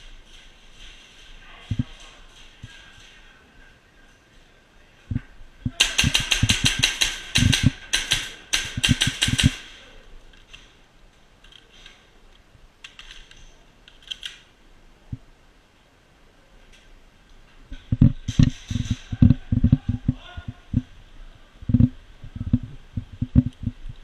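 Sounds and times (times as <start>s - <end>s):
airsoft guns firing: 5.7s - 9.8s.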